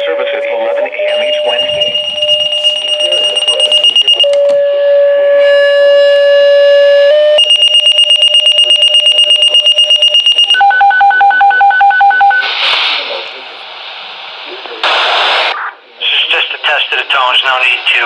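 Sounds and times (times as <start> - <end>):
paging tones over scanner radio: 0.0 - 4.5, 7.2 - 12.6.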